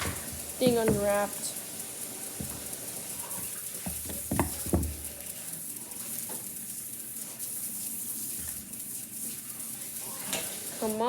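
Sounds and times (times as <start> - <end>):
short knocks: 0.0 - 1.4, 3.8 - 5.2.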